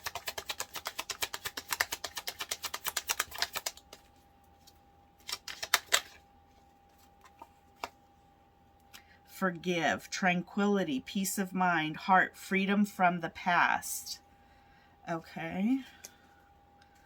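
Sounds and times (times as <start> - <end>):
card flicks and taps: 0.0 - 4.0
cards being shuffled: 0.0 - 6.2, 6.9 - 8.0.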